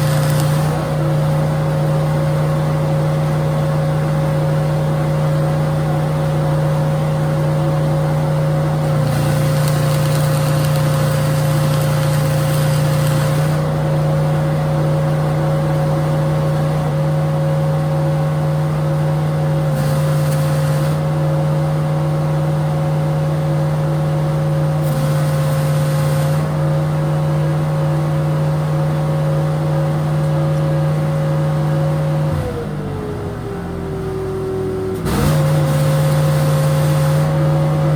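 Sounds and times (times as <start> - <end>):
hissing noise bursts: 0.0 - 0.9, 19.8 - 21.0, 35.0 - 37.4
planer machine humming: 0.0 - 37.9.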